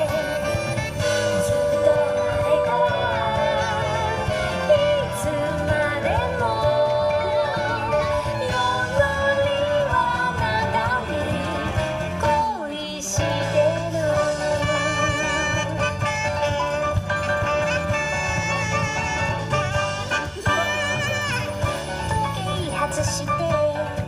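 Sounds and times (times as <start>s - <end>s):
person singing: 0.0s - 17.0s.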